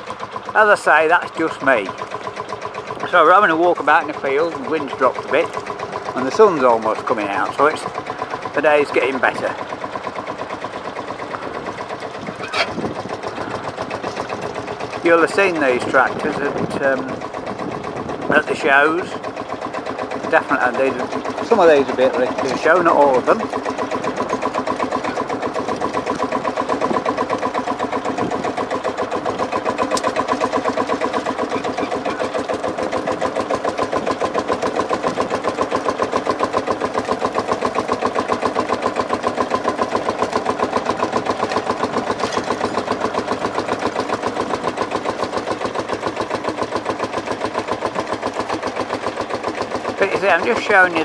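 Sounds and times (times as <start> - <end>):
tractor engine running: 0.0 - 51.0.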